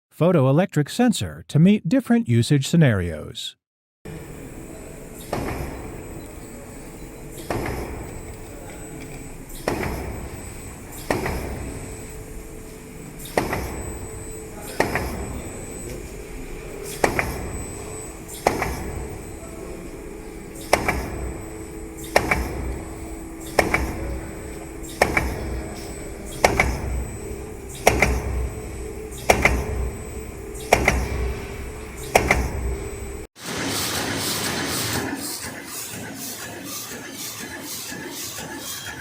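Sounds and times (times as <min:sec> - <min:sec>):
steady motor hum: 0:04.1 - 0:33.3
cutting blade chopping: 0:32.1 - 0:32.6.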